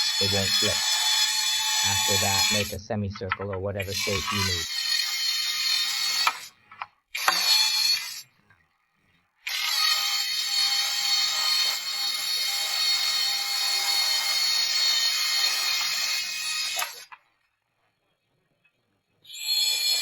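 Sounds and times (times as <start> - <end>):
electric drill cutting sheet metal: 0.0 - 2.8, 3.9 - 8.3, 9.5 - 17.1, 19.3 - 20.0.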